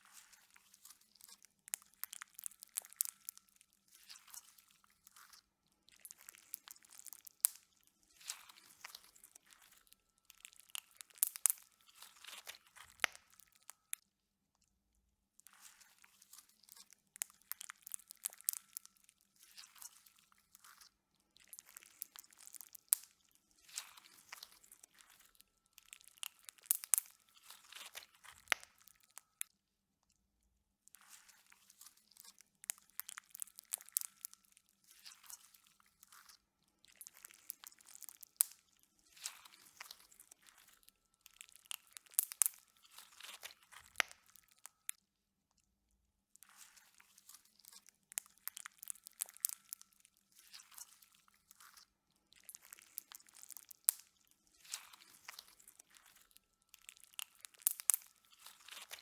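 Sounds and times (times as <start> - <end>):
slime crackling when squeezed: 26.2 - 28.6, 41.5 - 44.5, 56.9 - 59.0.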